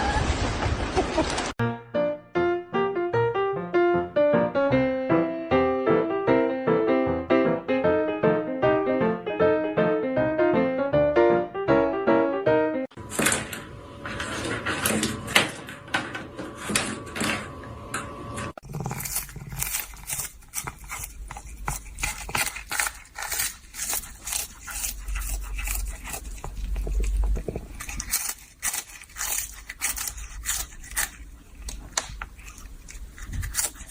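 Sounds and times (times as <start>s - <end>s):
dog clicks and scrapes: 18.6s - 33.9s.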